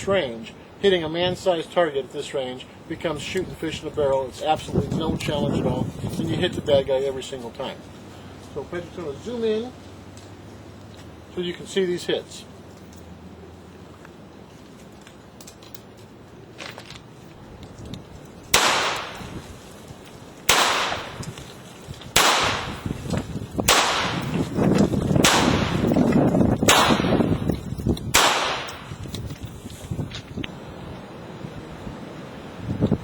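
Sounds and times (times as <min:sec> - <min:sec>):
wind rumble on microphone: 0:02.9 - 0:08.8, 0:17.2 - 0:33.0
handgun shots: 0:18.6 - 0:19.4, 0:20.5 - 0:21.4, 0:22.2 - 0:23.0, 0:23.7 - 0:24.5, 0:25.2 - 0:26.0, 0:26.6 - 0:27.3, 0:28.1 - 0:29.0.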